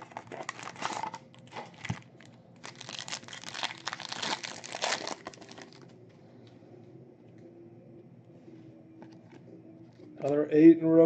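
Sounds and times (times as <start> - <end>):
foil wrapper tearing and crinkling: 0.0 - 5.9.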